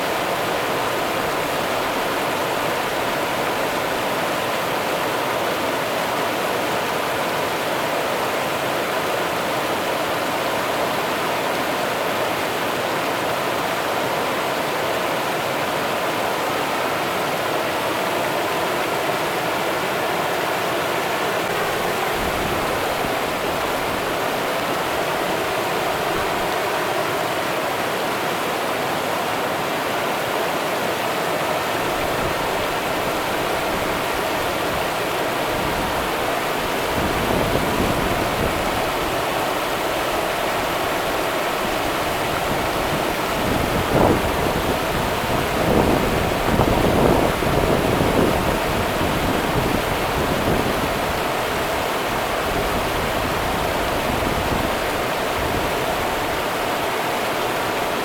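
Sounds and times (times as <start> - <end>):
river water rushing over rocks: 0.0 - 58.0.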